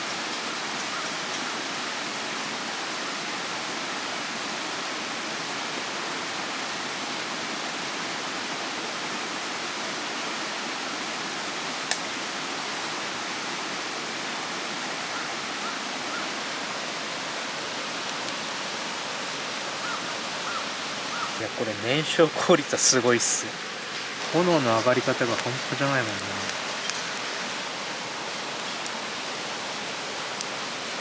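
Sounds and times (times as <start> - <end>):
firewood crackle: 0.0 - 2.2, 11.7 - 15.2, 17.7 - 19.4, 21.1 - 31.0
fire rushing in a stove: 21.4 - 30.5.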